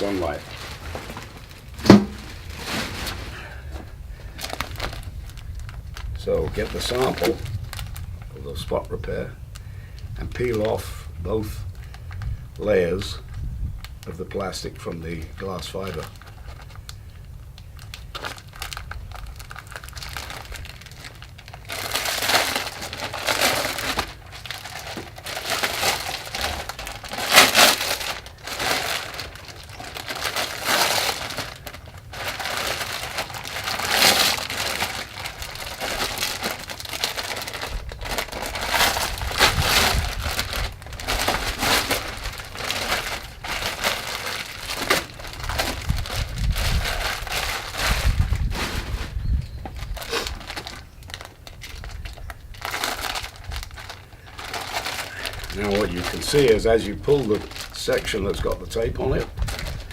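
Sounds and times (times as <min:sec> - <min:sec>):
plastic film peeling and crinkling: 0:00.0 - 0:08.3, 0:11.8 - 0:59.9.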